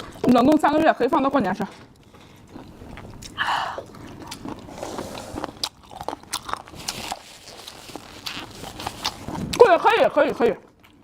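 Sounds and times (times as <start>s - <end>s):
person chewing with wet crunches: 0.0s - 11.0s
slurping: 2.4s - 10.3s.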